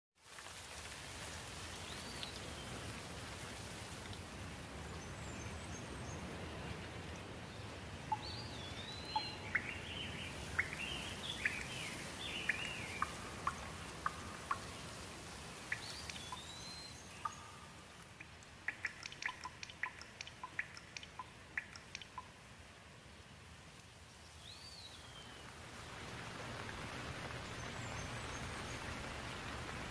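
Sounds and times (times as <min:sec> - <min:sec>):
steady rain: 0:00.2 - 0:29.9
sharp drip-like ticks: 0:00.3 - 0:04.3, 0:08.1 - 0:22.6, 0:23.7 - 0:24.5
birds calling: 0:08.1 - 0:22.3.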